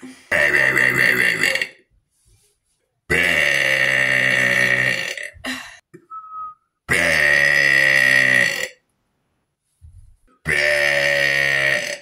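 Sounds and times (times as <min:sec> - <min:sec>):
person burping loudly: 0:00.0 - 0:01.9, 0:03.1 - 0:05.8, 0:06.9 - 0:08.8, 0:10.4 - 0:12.0.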